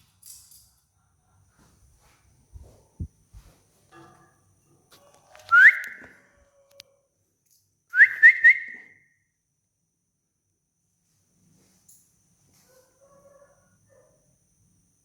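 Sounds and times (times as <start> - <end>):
upward-sliding whistled notes: 5.5 - 6.1, 8.0 - 8.9.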